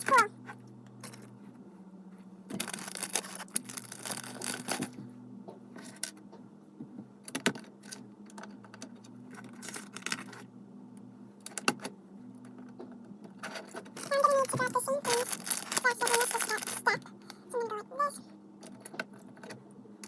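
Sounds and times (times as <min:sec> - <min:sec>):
plastic toy bricks rattling and clicking: 0:02.6 - 0:04.9, 0:13.5 - 0:17.0.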